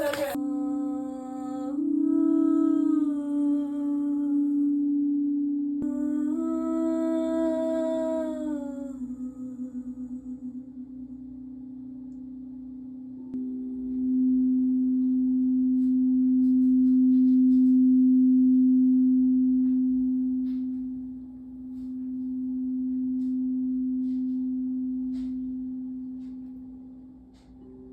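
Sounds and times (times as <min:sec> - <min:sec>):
singing bowl ringing: 0:00.0 - 0:27.9.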